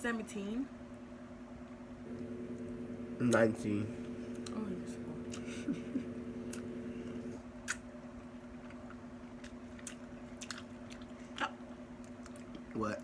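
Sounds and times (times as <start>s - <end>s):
steady low hum: 2.0s - 7.4s
faint chewing: 6.4s - 7.9s, 8.5s - 12.8s.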